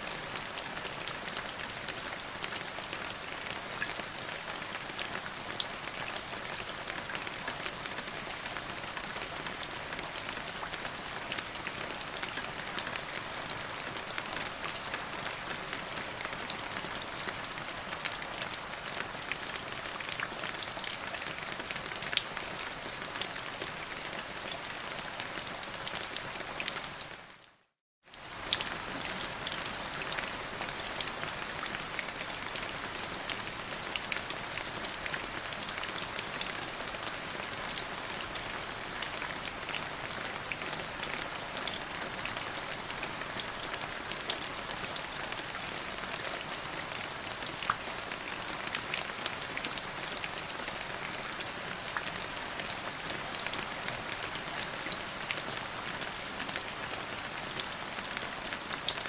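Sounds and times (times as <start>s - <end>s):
steady rain falling: 0.0s - 59.0s
raindrops ticking on a surface: 28.1s - 59.0s.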